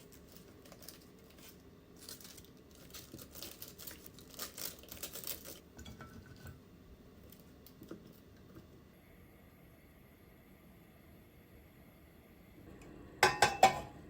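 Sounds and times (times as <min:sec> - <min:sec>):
crinkling handling noises: 0:00.0 - 0:08.7.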